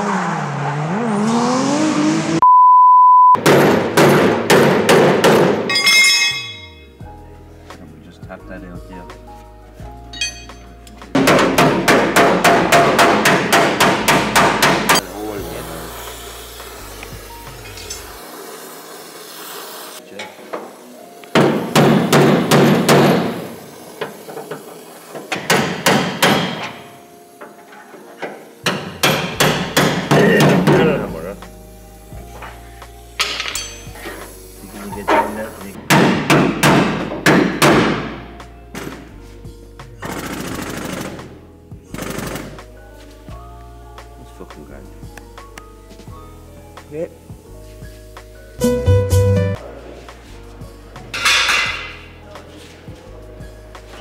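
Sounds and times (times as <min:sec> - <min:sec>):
car engine revving: 0:00.0 - 0:02.4
loud steady beep tone: 0:02.4 - 0:03.4
hammer striking steel: 0:03.4 - 0:06.9, 0:10.2 - 0:15.0, 0:21.3 - 0:24.6, 0:25.2 - 0:26.9, 0:28.6 - 0:31.0, 0:33.2 - 0:34.0, 0:35.9 - 0:38.3, 0:51.1 - 0:52.1
ringing chime: 0:05.7 - 0:07.0, 0:10.1 - 0:10.7
heavy knocks: 0:35.9 - 0:38.2.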